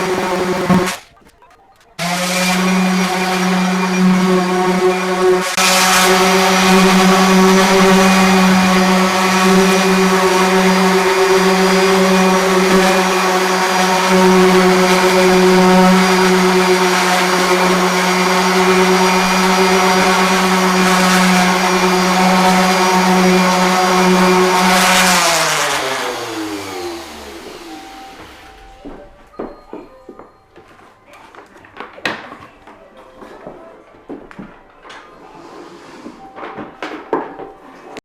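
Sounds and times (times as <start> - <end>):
floor sander motor humming: 0.0 - 1.1, 2.8 - 28.5.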